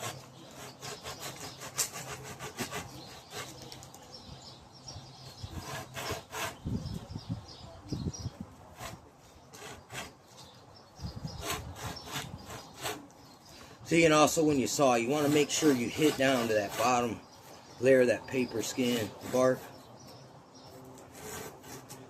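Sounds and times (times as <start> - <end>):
hand saw cutting bark: 0.0 - 3.8, 5.5 - 6.6, 8.8 - 10.2, 11.4 - 13.1, 14.6 - 17.2, 18.4 - 19.8, 20.9 - 22.0.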